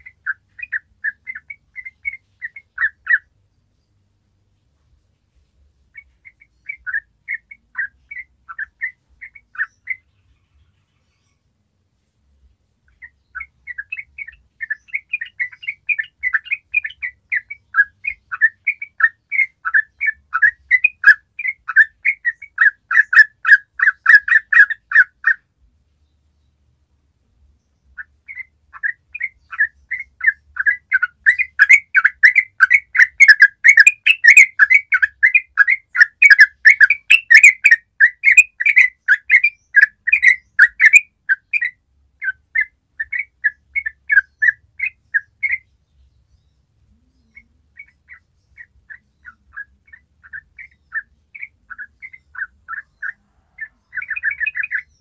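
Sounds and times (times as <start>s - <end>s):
bird singing chattering notes: 0.0s - 3.3s, 5.9s - 11.4s, 12.9s - 25.4s, 27.7s - 55.0s.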